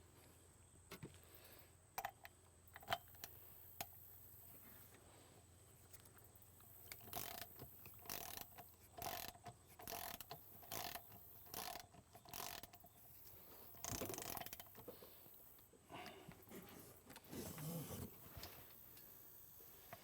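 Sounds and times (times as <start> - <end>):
ratchet wrench clicking: 6.9 - 14.8.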